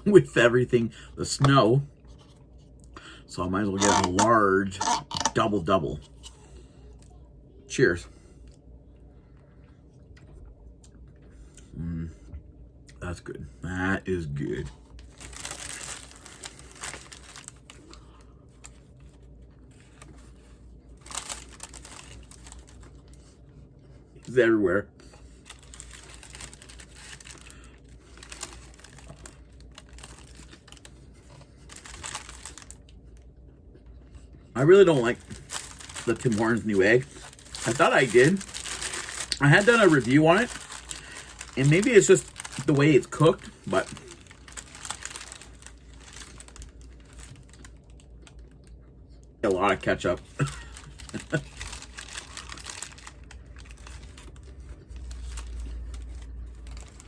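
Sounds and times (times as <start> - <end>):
low steady hum: 0.0 - 57.0
paper wrapper crinkling: 3.8 - 5.4, 14.4 - 23.4, 25.0 - 33.3, 34.1 - 48.8, 49.4 - 57.0.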